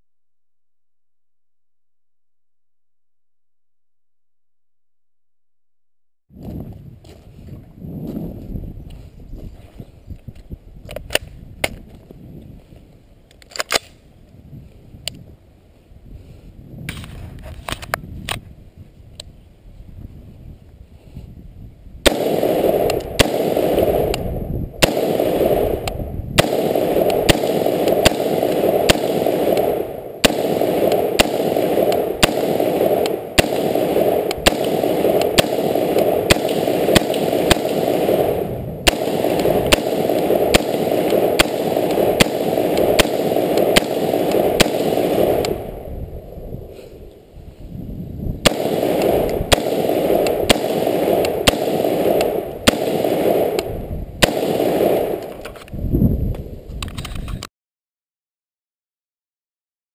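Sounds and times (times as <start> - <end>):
gunshots: 22.0 - 46.2, 48.4 - 55.6
steady rushing noise: 22.1 - 55.4.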